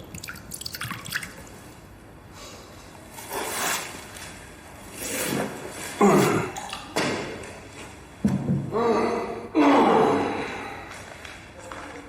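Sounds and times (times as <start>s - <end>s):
liquid pouring into cup: 0.0s - 1.6s.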